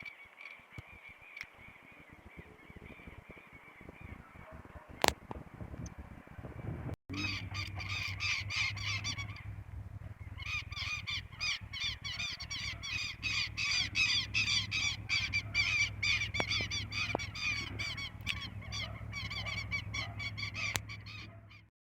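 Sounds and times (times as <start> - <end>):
flock of birds calling harshly: 0.0 - 5.2, 7.1 - 21.7
steady low hum: 1.7 - 21.5
faint clicks: 16.3 - 18.5.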